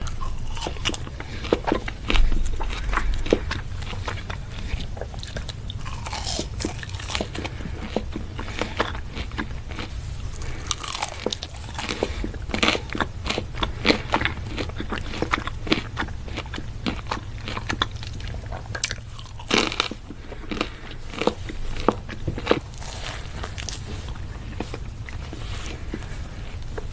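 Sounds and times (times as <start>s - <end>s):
crunchy chewing: 0.0s - 26.9s
low steady hum: 0.0s - 26.9s.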